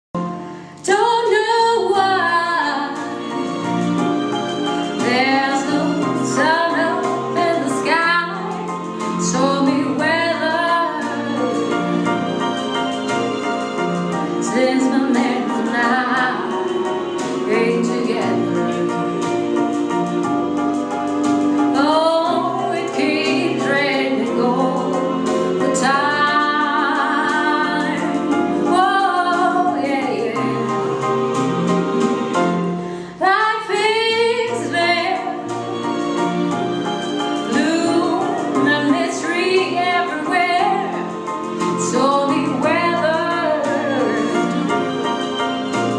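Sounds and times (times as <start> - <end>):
sustained keyboard chords: 0.2 - 33.0
woman singing: 0.8 - 3.3, 5.0 - 12.1, 14.4 - 19.0, 21.7 - 31.0, 33.1 - 35.5, 37.4 - 45.0
woman singing slow song: 21.8 - 30.7.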